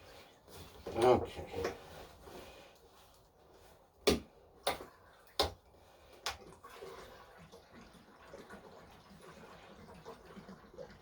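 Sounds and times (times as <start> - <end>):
fuel pouring into tank: 6.0 - 11.0.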